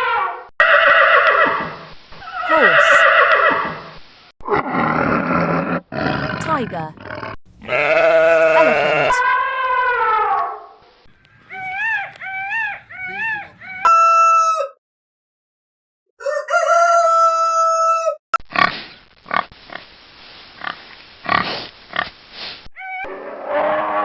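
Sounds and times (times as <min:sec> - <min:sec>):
animal calls rising and falling: 0:00.0 - 0:03.8, 0:07.7 - 0:14.8, 0:22.8 - 0:24.0
long high animal calls: 0:00.0 - 0:03.8, 0:07.6 - 0:14.8, 0:22.8 - 0:24.0
animal grunts: 0:04.4 - 0:09.2.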